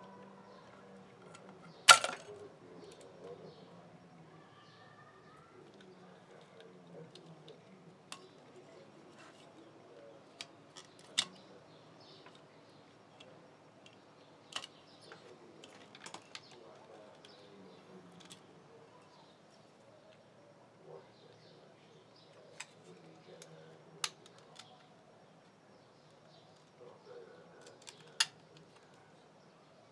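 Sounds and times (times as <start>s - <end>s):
small hard parts clicking: 1.3s - 2.4s.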